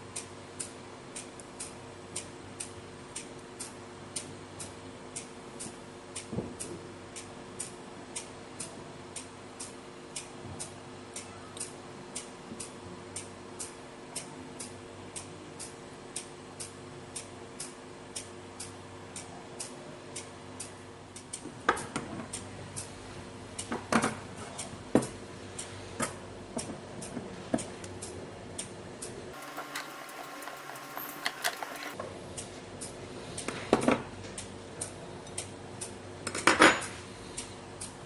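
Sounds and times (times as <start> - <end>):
irregular clicks and knocks: 29.4 - 32.0
light even ticking: 29.4 - 32.0.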